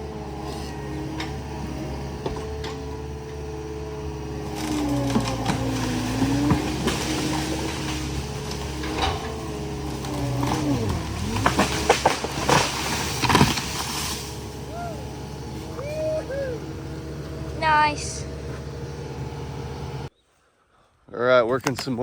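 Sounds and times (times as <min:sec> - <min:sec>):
machine engine running: 0:00.0 - 0:20.1
whining tone: 0:00.0 - 0:20.1
knocks and clatter: 0:01.0 - 0:03.4, 0:04.4 - 0:14.4.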